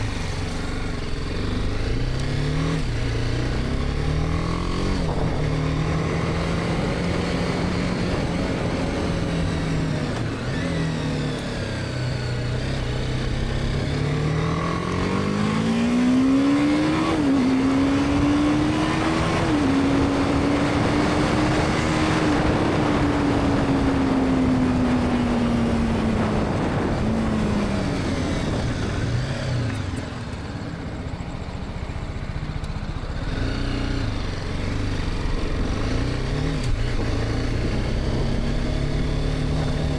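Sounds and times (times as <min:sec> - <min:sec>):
motorcycle engine accelerating: 0:00.0 - 0:39.9
wind rush: 0:04.8 - 0:10.8, 0:14.6 - 0:29.7.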